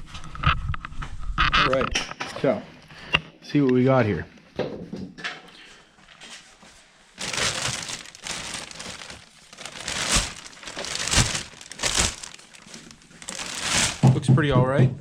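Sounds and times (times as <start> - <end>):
packaging crinkling and rustling: 6.2 - 14.2.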